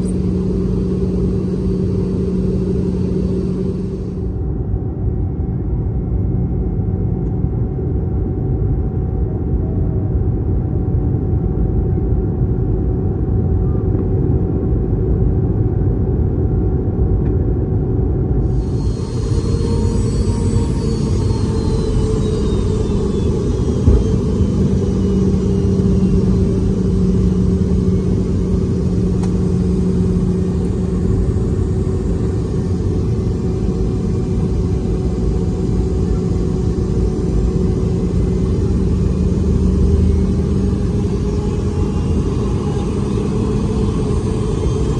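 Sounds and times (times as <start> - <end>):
aircraft cabin rumble: 0.0 - 5.4, 17.1 - 44.9
high turbine whine: 0.0 - 6.9, 18.3 - 44.9.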